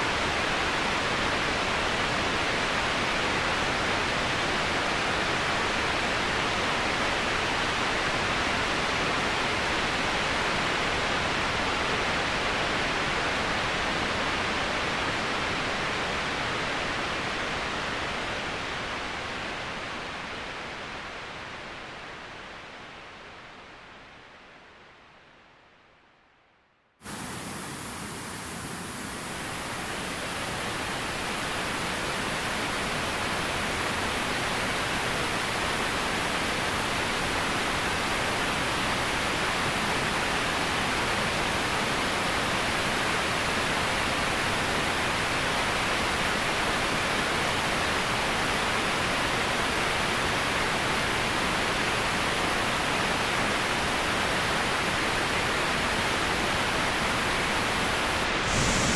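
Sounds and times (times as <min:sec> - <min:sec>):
waterfall rushing: 0:27.0 - 0:34.2, 0:58.0 - 0:58.9.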